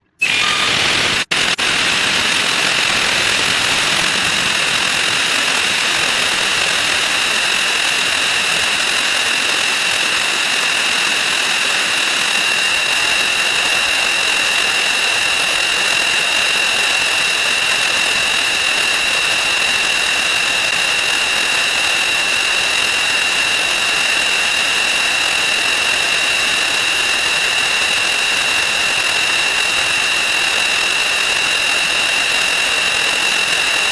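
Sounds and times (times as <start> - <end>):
loud hiss with high whine: 0.2 - 33.9.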